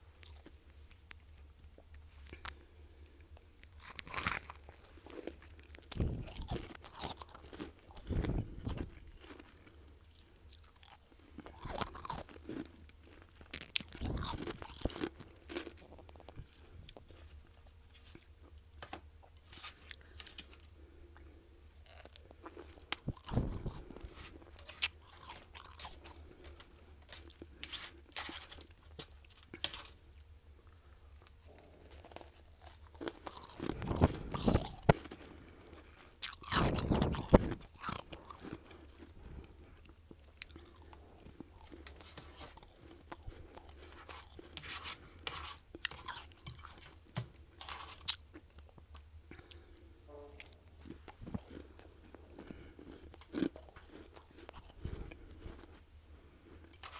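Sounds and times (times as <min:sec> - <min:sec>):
crackling chewing: 0:00.0 - 0:56.9
crunching bites of frost: 0:03.7 - 0:09.5, 0:13.3 - 0:16.4.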